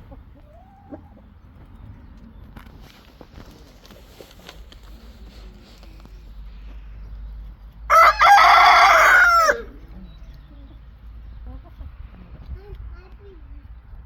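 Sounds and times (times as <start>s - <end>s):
rooster crowing: 7.9s - 9.7s.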